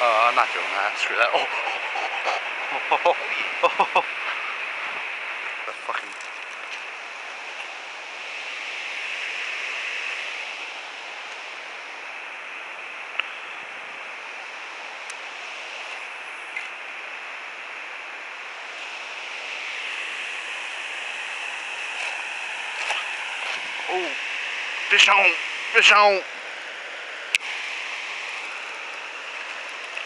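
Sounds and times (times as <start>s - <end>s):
creek water flowing: 0.0s - 11.9s, 18.5s - 30.0s.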